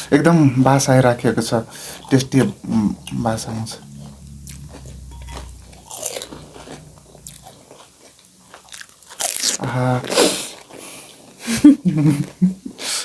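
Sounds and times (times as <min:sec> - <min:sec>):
crunching crisp food: 0:01.8 - 0:11.4.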